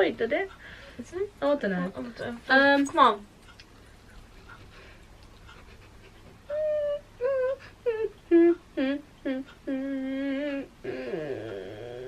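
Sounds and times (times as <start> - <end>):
woman humming a melody: 6.5 - 12.0.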